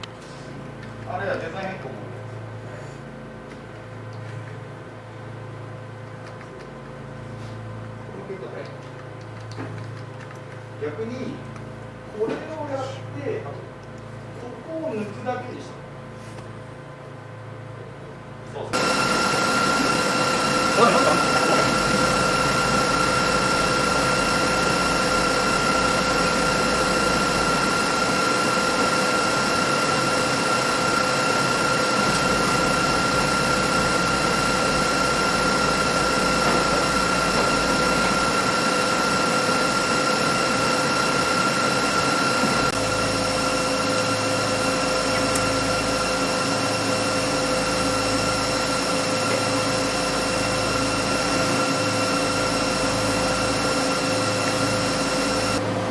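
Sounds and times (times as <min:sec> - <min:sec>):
machine hum: 0:16.8 - 0:55.9
high whine: 0:18.8 - 0:55.7.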